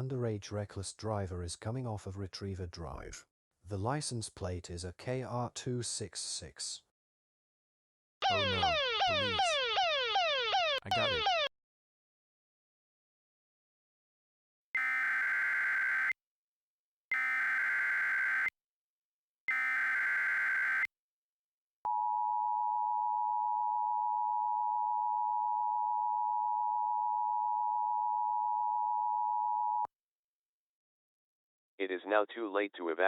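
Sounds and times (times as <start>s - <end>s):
two-tone attention signal: 8.2s - 9.7s.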